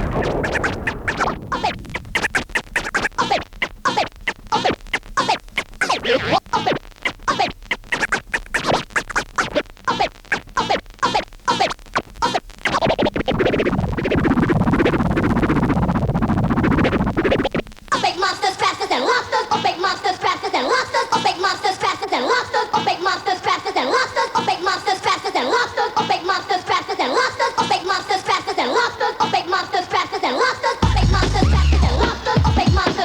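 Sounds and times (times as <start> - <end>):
dj mix music: 0.0 - 5.4, 18.1 - 33.0
record scratching: 0.0 - 23.2, 26.0 - 33.0.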